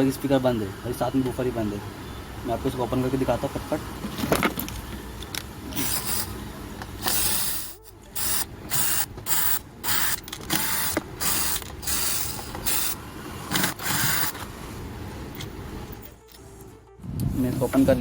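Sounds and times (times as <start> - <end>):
hissing whirring bursts: 5.7 - 15.2.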